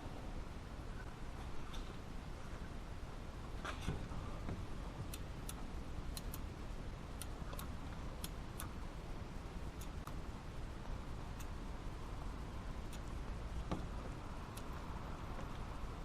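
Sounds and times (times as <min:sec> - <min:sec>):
small sharp clicks: 0:05.0 - 0:06.5, 0:07.2 - 0:08.8, 0:09.8 - 0:10.2.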